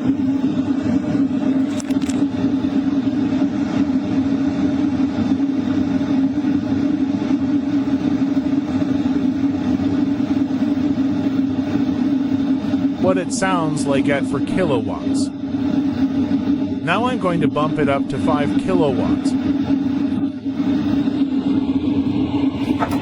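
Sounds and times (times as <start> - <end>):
exhaust hum: 12.5 - 23.0
heater air rushing: 18.4 - 23.0.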